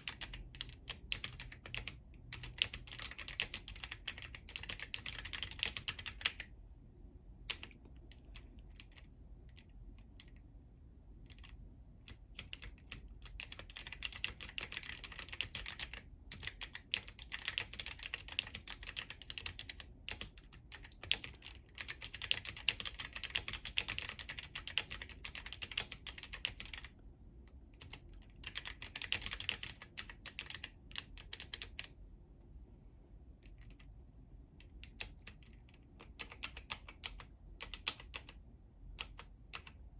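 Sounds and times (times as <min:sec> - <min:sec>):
mechanical keyboard key clicks: 0:12.1 - 0:26.9, 0:34.6 - 0:38.4.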